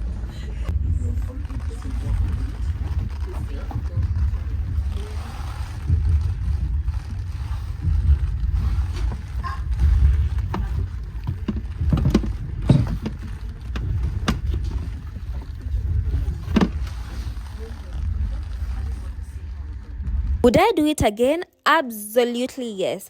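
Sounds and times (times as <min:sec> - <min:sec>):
train rumbling inside carriage: 0:00.0 - 0:20.4.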